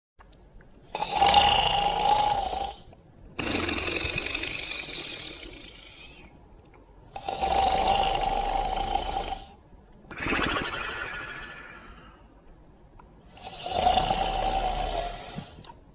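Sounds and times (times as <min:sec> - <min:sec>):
cartoon dog snoring: 0:00.9 - 0:06.2, 0:07.1 - 0:12.0, 0:13.3 - 0:15.6
long breath out: 0:11.0 - 0:12.4.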